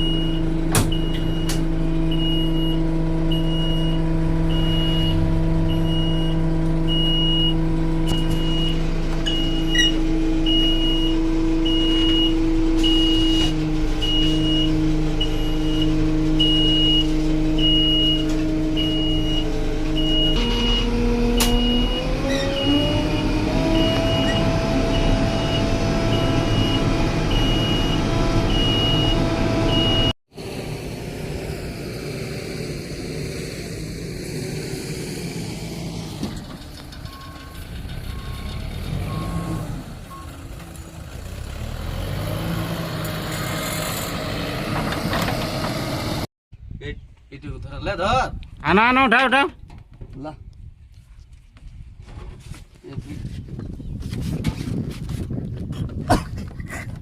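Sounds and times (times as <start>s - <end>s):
reverse alarm beeping: 0.0s - 18.2s, 18.8s - 30.2s
diesel engine running: 0.0s - 46.3s.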